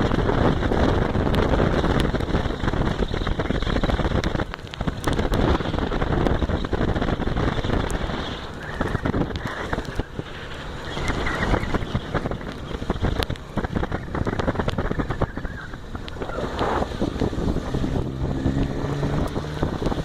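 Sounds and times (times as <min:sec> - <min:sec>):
motorcycle engine running: 0:00.0 - 0:20.0
wind buffeting on microphone: 0:00.0 - 0:20.0.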